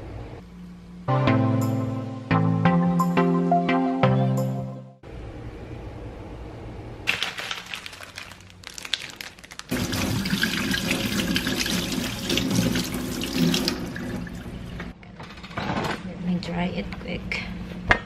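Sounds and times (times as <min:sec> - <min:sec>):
water running from tap into sink: 0:09.7 - 0:14.9.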